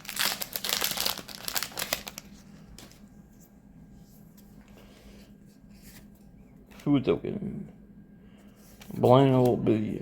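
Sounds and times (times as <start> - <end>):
foil wrapper crinkling and tearing: 0.0 - 2.4.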